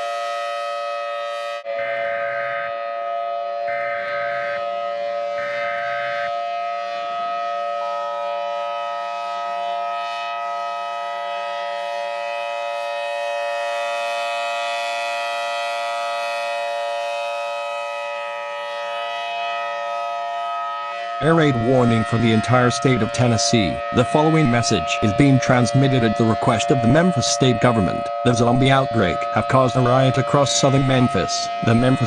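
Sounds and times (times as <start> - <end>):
air-raid siren: 0.0 - 32.0
high buzzing bursts: 1.5 - 6.7.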